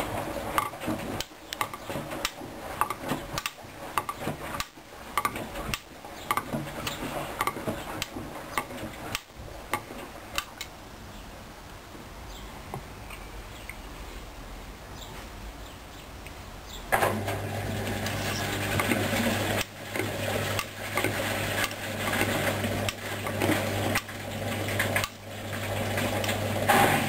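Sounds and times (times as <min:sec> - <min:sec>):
washing machine drum turning: 0:00.0 - 0:10.5, 0:16.9 - 0:27.0.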